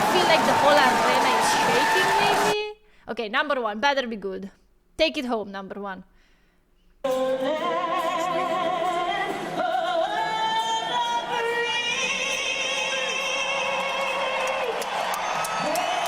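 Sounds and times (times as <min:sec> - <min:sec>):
solo voice singing with vibrato: 0:07.1 - 0:14.7.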